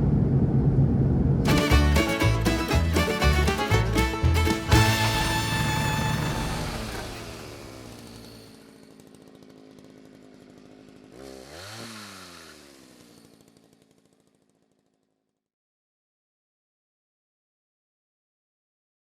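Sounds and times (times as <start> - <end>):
small engine pulsing: 4.8 - 14.3.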